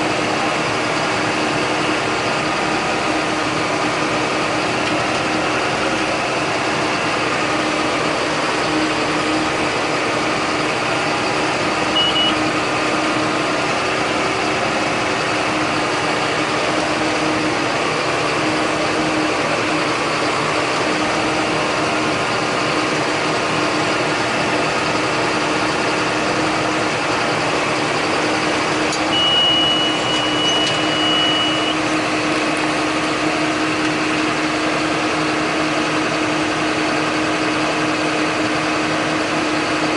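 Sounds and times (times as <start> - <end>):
tractor engine running: 0.0 - 39.9
high beep: 11.9 - 12.5, 29.0 - 31.9.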